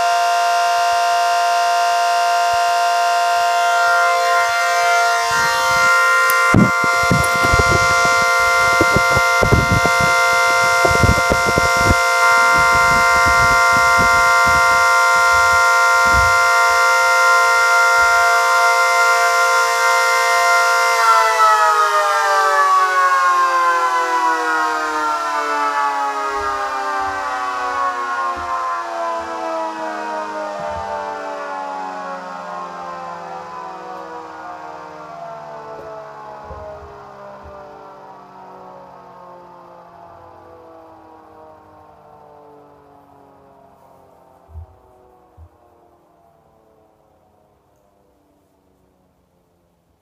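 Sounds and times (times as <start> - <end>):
three-tone siren: 0.0 - 50.0
low rumbles: 5.4 - 14.8.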